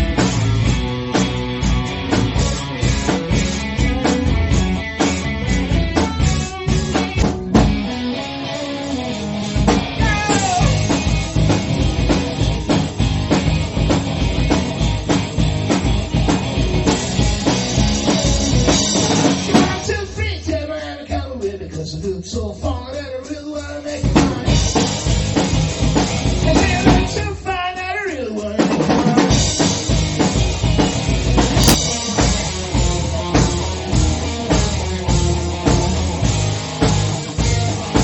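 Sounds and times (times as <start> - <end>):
rock band playing: 0.0 - 38.0
person singing: 10.0 - 11.0.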